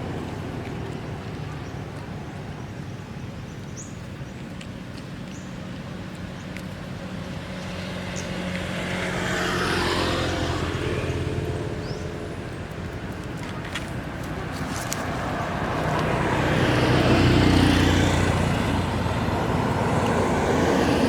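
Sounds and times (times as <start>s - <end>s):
vehicle passing by: 7.1s - 21.0s.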